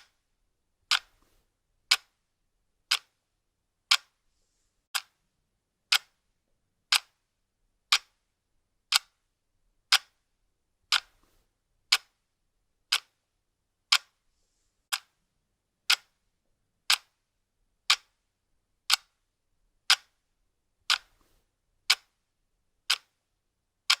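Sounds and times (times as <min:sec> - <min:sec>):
clock ticking: 0:00.9 - 0:01.2, 0:01.9 - 0:02.2, 0:02.9 - 0:03.2, 0:03.9 - 0:04.2, 0:04.9 - 0:05.2, 0:05.9 - 0:06.2, 0:06.9 - 0:07.2, 0:07.9 - 0:08.2, 0:08.9 - 0:09.2, 0:09.9 - 0:10.2, 0:10.9 - 0:11.1, 0:11.9 - 0:12.2, 0:12.9 - 0:13.2, 0:13.9 - 0:14.2, 0:14.9 - 0:15.2, 0:15.9 - 0:16.2, 0:16.9 - 0:17.2, 0:17.9 - 0:18.2, 0:18.9 - 0:19.2, 0:19.8 - 0:20.2, 0:20.9 - 0:21.2, 0:21.9 - 0:22.2, 0:22.8 - 0:23.2.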